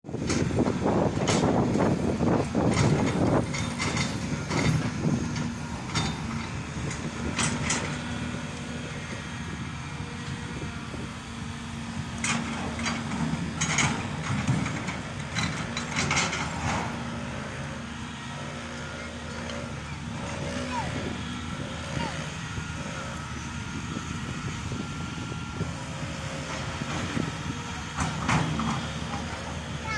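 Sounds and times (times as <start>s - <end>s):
diesel engine drone: 0.0s - 29.9s.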